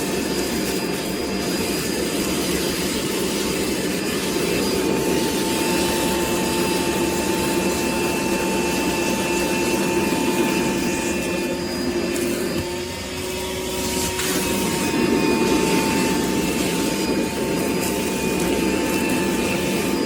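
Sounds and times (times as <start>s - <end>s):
shop vacuum running: 0.0s - 20.0s.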